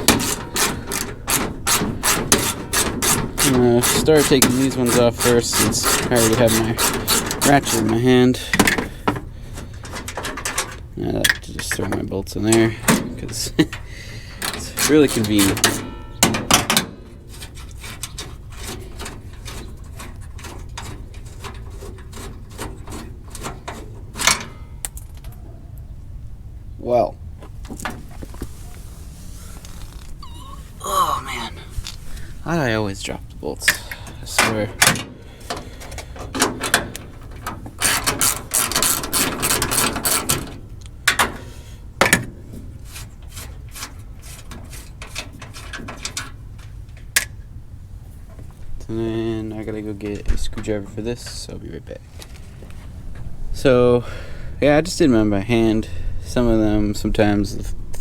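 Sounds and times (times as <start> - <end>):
hand ratchet clicking: 0.0 - 7.9, 37.8 - 40.4.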